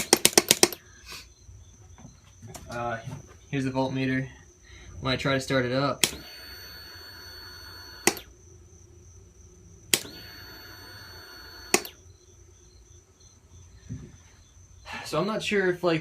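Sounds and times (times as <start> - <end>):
starter relay clicking: 6.0 - 6.3, 8.0 - 8.3, 9.9 - 10.7, 11.7 - 12.0
starter high whine: 6.0 - 8.3, 9.9 - 12.0.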